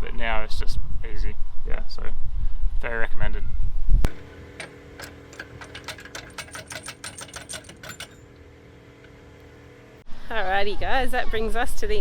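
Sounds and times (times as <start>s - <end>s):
rapid ticking clicks: 4.1s - 10.0s.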